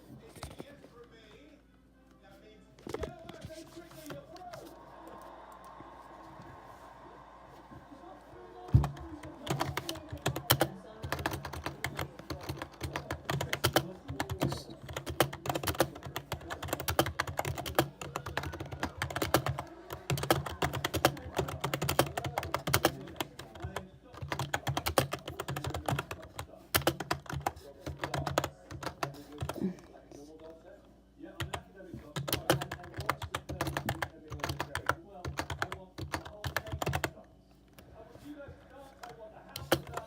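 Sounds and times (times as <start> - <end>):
computer keyboard typing: 8.6 - 29.7, 31.4 - 37.2, 39.0 - 40.0.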